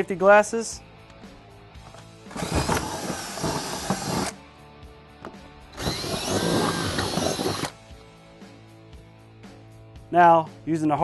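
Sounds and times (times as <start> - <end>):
cordless drill boring: 2.3 - 4.4, 5.8 - 7.8.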